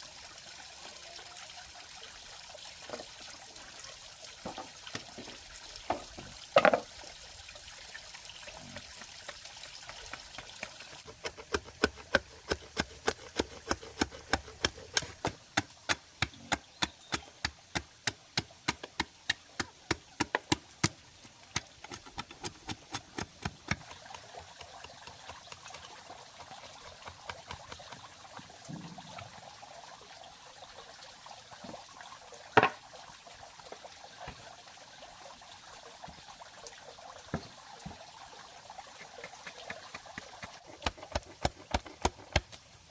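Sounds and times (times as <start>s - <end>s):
faint water trickle: 0.0s - 11.1s, 23.6s - 40.8s.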